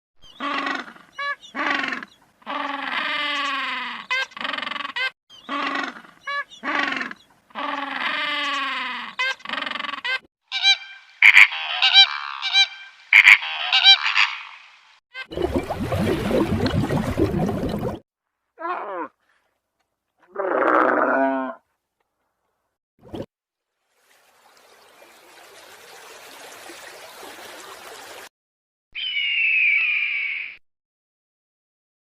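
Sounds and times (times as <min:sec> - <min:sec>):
animal honking calls: 0:04.1 - 0:14.5
high chirping calls: 0:29.0 - 0:30.6.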